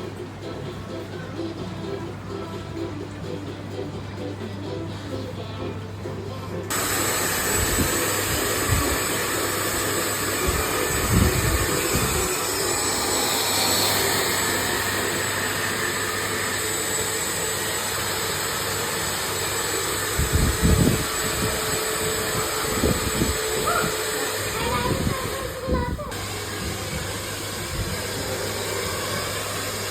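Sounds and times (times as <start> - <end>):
hair dryer blowing: 6.7 - 29.9.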